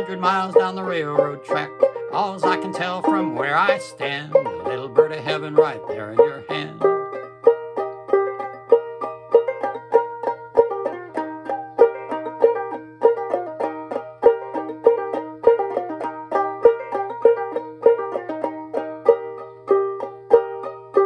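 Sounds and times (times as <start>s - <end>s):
ukulele plucked clawhammer style: 0.0s - 21.0s.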